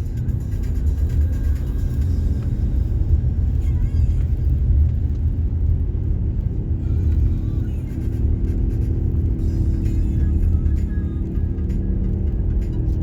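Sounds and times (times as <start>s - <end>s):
car engine and road rumble: 0.0s - 13.0s.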